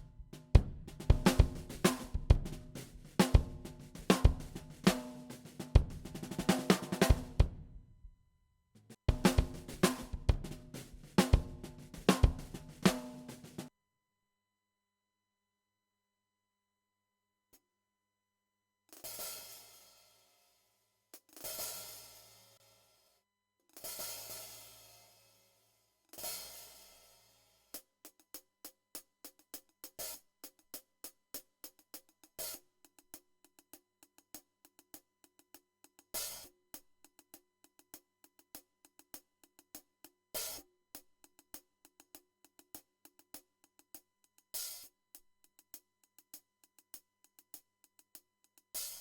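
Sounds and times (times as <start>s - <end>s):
hi-hat ticks: 27.7s - 49.0s.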